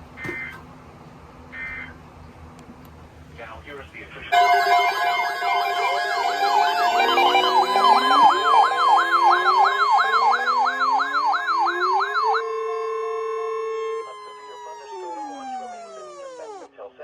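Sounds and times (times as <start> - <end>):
slow rising siren sweeps: 4.3 - 16.7
steady high alert tone: 4.3 - 16.7
electronic siren wailing: 4.4 - 16.7.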